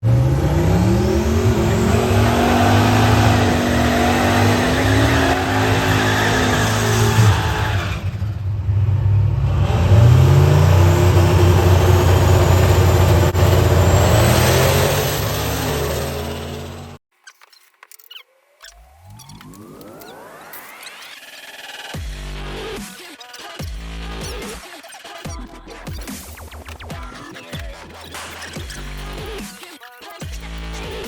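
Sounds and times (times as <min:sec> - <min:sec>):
drag car engine revving: 0:00.0 - 0:17.0.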